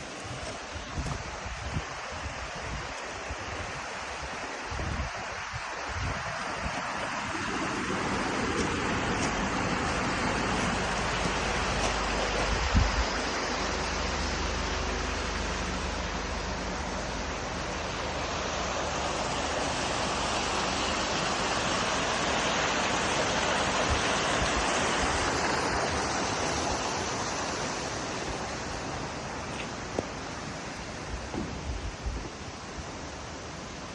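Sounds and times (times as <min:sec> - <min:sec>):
waterfall rushing: 0:00.0 - 0:33.9
brief low thump: 0:31.3 - 0:31.8.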